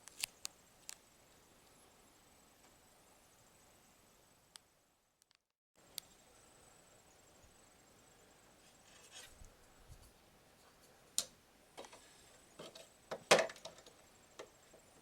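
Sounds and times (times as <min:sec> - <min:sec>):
hands handling computer hardware: 0:11.2 - 0:14.9.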